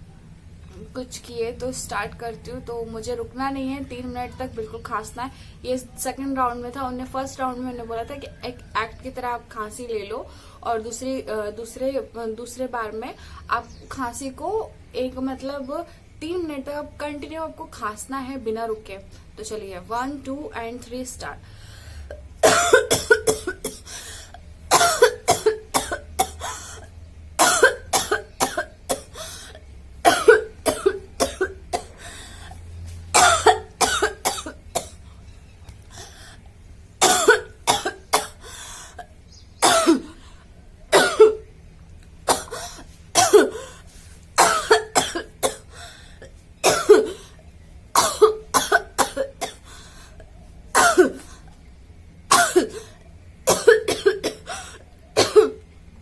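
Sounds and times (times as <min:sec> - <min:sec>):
woman coughing: 0:22.4 - 0:24.0, 0:24.7 - 0:29.3, 0:30.1 - 0:32.0, 0:33.2 - 0:35.0, 0:37.0 - 0:38.5, 0:39.6 - 0:40.2, 0:40.9 - 0:41.4, 0:42.3 - 0:43.8, 0:44.4 - 0:47.4, 0:48.0 - 0:49.7, 0:50.8 - 0:51.3, 0:52.3 - 0:55.6.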